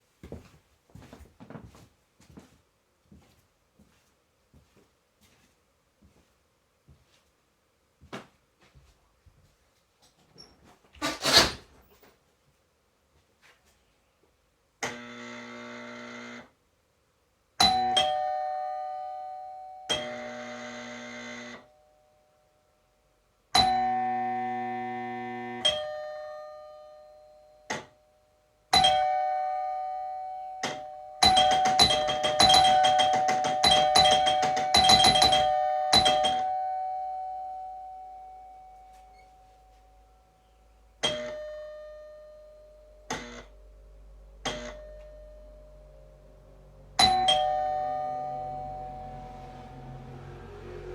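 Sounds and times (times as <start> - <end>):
electric buzz: 14.8 - 16.5, 24.2 - 25.6
doorbell chime strikes: 28.8 - 40.0, 47.0 - 50.2.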